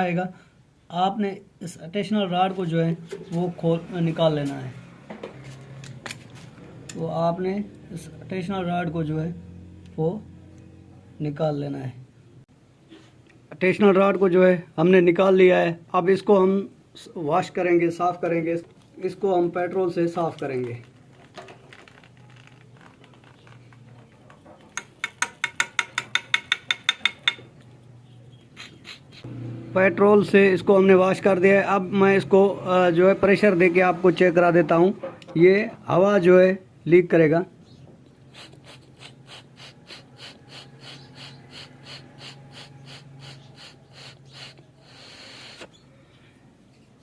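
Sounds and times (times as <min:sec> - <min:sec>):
air wheezing through a rod: 0:38.3 - 0:45.7.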